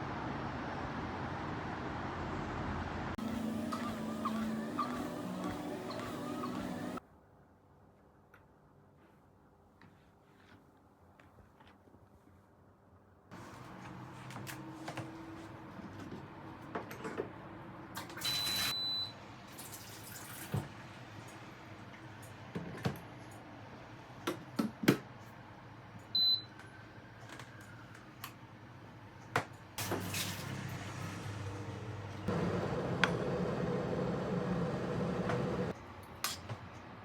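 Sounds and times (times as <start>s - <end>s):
appliance short high beeps: 18.2s - 19.2s.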